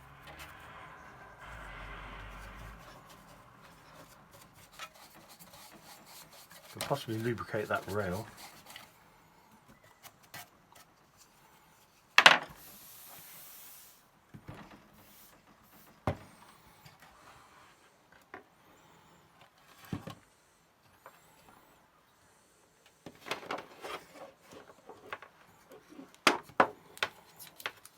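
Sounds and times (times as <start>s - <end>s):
plastic printer parts handled: 23.2s - 27.9s.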